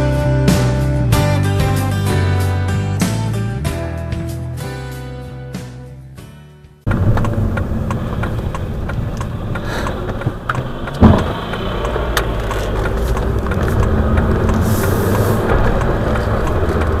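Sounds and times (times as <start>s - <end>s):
car engine running: 6.9s - 17.0s
clicks: 6.9s - 17.0s
loud knock: 11.0s - 11.4s.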